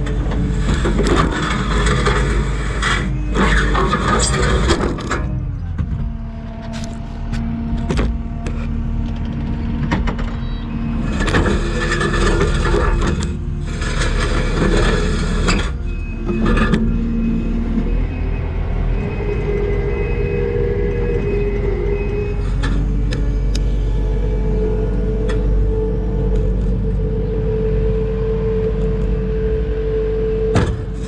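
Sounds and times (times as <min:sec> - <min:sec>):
diesel engine under load: 0:00.0 - 0:31.0.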